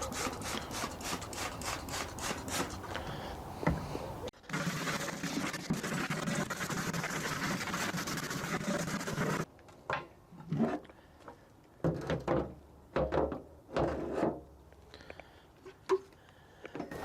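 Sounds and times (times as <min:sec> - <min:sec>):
scrubbing oil drain pan: 0:00.0 - 0:03.2.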